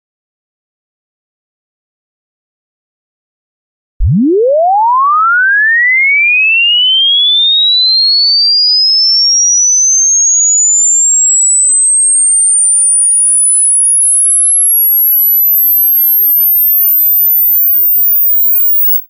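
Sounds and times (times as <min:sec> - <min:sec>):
rising sine tone sweep: 0:04.0 - 0:19.0.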